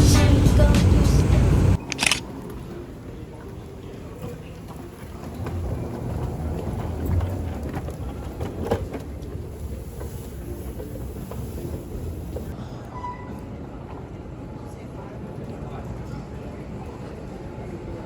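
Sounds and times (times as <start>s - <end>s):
vehicle rumble: 0.0s - 2.6s, 5.3s - 12.5s
clicks: 1.8s - 2.2s.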